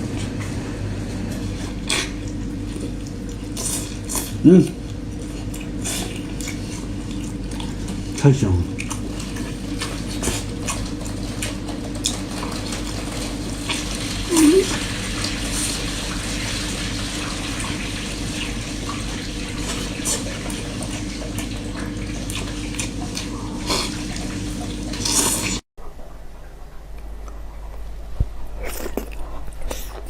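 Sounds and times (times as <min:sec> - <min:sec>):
wet chewing and slurping: 0:00.2 - 0:16.0, 0:19.0 - 0:25.6, 0:28.4 - 0:30.0.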